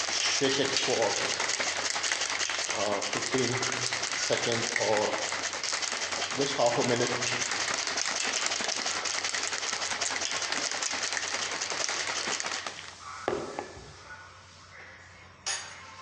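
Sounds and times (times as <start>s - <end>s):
shaker cup rattling: 0.0s - 13.8s.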